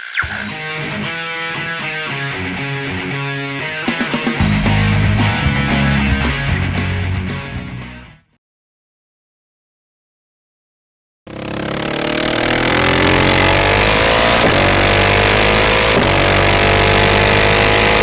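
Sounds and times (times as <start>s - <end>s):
motorcycle engine running: 3.9s - 7.4s, 11.3s - 18.0s.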